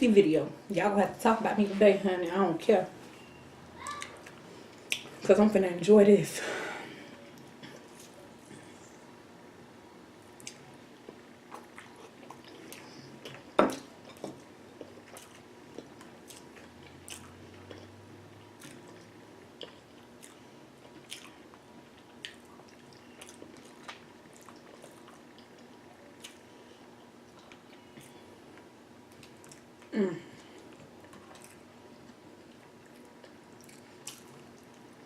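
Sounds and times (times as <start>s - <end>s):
wet chewing and lip smacking: 14.8s - 26.4s, 30.7s - 35.0s.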